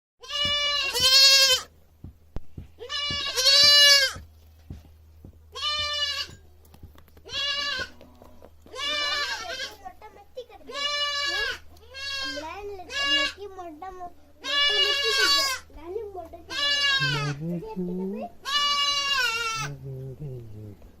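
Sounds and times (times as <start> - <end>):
goat bleating: 0.2 - 1.7, 2.8 - 4.3, 5.5 - 6.4, 7.2 - 10.0, 10.6 - 13.4, 14.4 - 15.8, 16.5 - 19.8.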